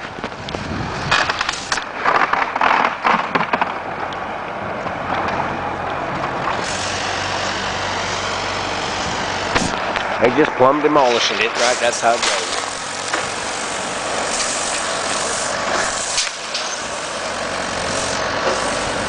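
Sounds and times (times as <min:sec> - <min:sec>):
debris crunching and cracking: 0:00.0 - 0:06.8
heavy machine engine running: 0:00.0 - 0:19.0
hiss: 0:06.6 - 0:09.7, 0:11.0 - 0:19.0.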